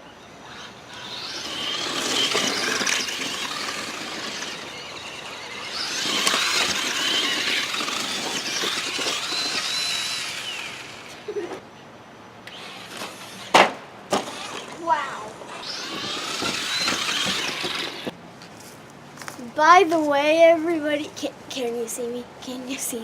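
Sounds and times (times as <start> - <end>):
toy truck motor whining: 0.4 - 11.6, 12.4 - 18.1.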